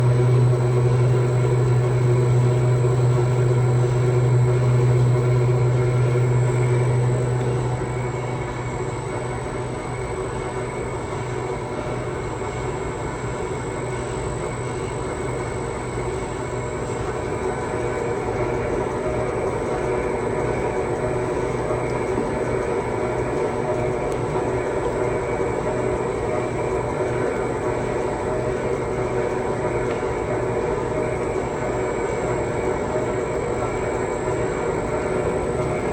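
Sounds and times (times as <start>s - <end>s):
strong low hum: 0.0s - 12.0s
oil expeller machine drone: 0.0s - 35.9s.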